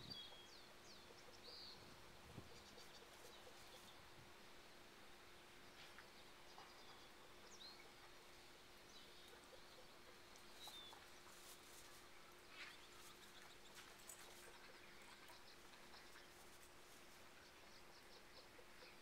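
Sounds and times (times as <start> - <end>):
faint bird chirps: 0.0 - 4.1
faint steady hum: 0.0 - 19.0.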